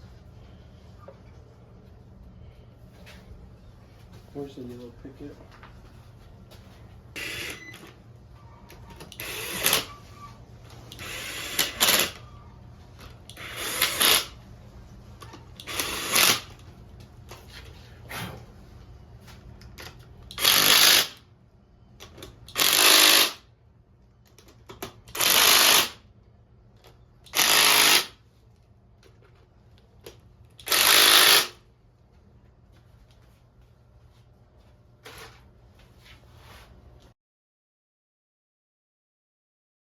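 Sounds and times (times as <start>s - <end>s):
power tool bursts: 7.2s - 7.9s, 9.1s - 9.9s, 10.9s - 12.2s, 13.3s - 14.4s, 15.6s - 16.5s, 20.3s - 21.2s, 22.5s - 23.4s, 25.1s - 26.0s, 27.3s - 28.2s, 30.6s - 31.6s.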